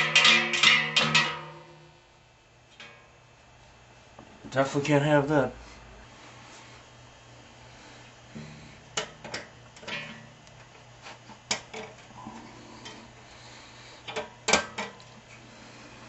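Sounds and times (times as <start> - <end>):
metal fan clicking and knocking: 0.0 - 1.9, 8.9 - 10.8, 11.4 - 12.2, 14.0 - 15.2
faint steady hum: 0.0 - 16.0.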